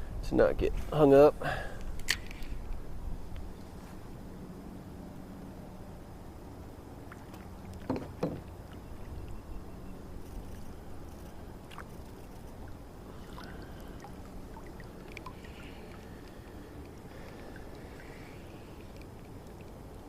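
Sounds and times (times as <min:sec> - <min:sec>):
water and handling noise: 0:07.0 - 0:20.0
knocks against kayak hull: 0:07.8 - 0:08.5.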